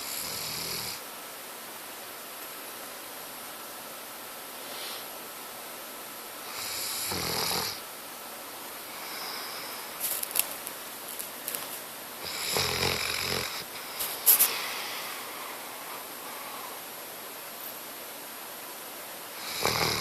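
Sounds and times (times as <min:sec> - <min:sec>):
dog snoring: 0:00.0 - 0:01.0, 0:06.4 - 0:07.8, 0:12.2 - 0:16.8, 0:19.4 - 0:20.0.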